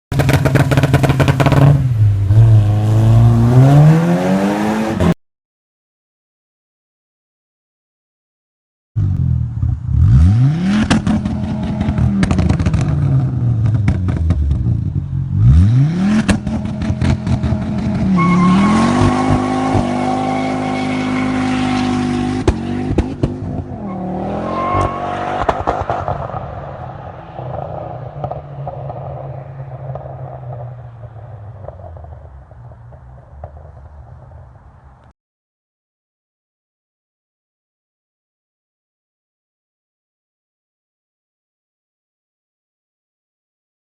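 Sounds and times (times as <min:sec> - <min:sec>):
engine bouncing off rev limiter: 0:00.1 - 0:05.0
car engine revving: 0:00.1 - 0:05.2, 0:09.0 - 0:34.3
exhaust crackles and pops: 0:10.8 - 0:15.2, 0:25.3 - 0:35.1.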